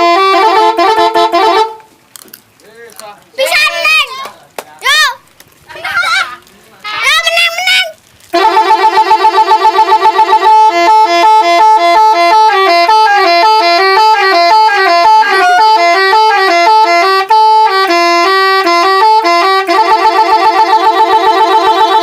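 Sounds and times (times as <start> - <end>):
musical air horn playing a tune: 0.0 - 1.9, 6.9 - 22.0.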